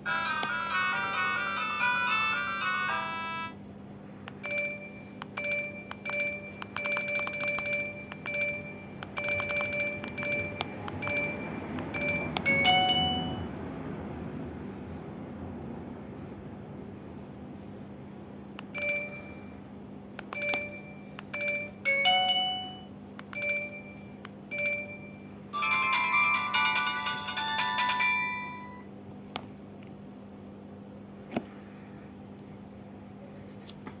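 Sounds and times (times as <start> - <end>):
electronic ringtone beeps: 0.1 - 3.6, 4.4 - 13.5, 18.8 - 19.6, 20.4 - 28.9.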